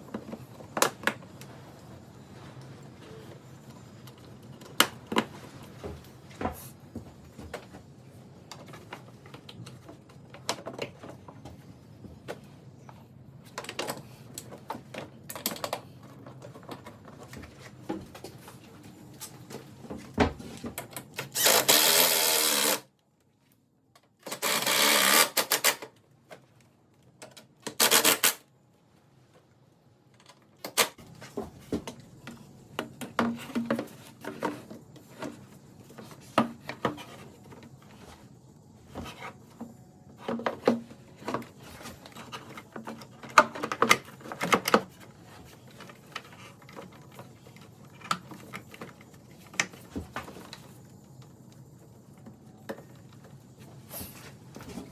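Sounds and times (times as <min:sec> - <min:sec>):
power tool bursts: 0:21.4 - 0:22.9, 0:24.3 - 0:25.8.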